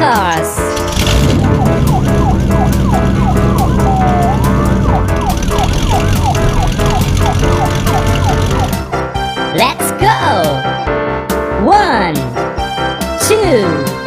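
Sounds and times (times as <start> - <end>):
cartoon police siren wail: 1.4 - 8.8.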